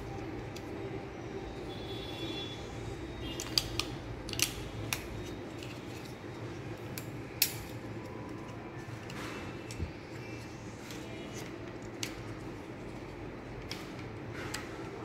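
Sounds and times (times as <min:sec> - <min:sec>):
steady low hum: 0:00.0 - 0:15.0
plastic parts clicking: 0:03.3 - 0:06.1.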